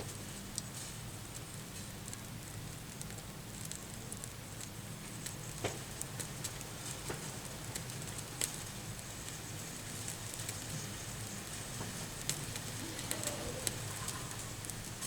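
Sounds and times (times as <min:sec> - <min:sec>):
crackles and sharp clicks: 0:00.0 - 0:10.6.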